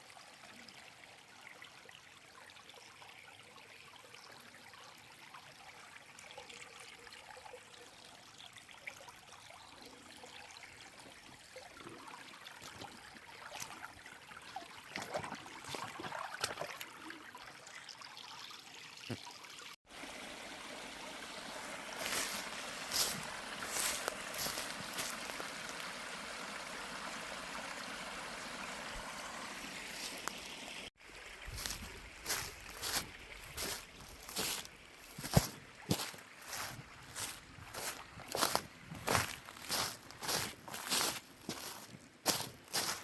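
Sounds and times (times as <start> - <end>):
stream water trickling: 0.0 - 43.0
light splashes and clicks: 14.9 - 16.9.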